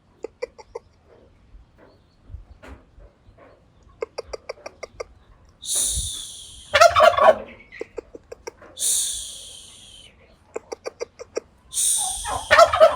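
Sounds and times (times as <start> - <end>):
high hiss bursts: 5.6 - 7.2, 8.8 - 10.1, 11.7 - 12.9
turkey gobbling: 5.7 - 10.0, 11.7 - 12.9.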